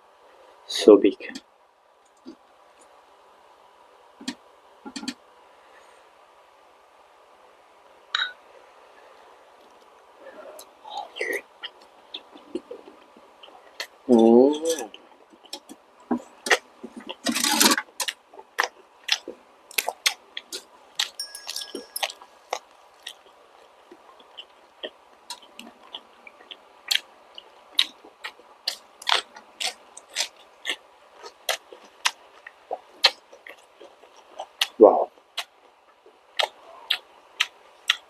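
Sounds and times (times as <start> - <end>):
person chewing with wet smacks: 14.7 - 17.2, 17.8 - 21.2, 22.5 - 38.0.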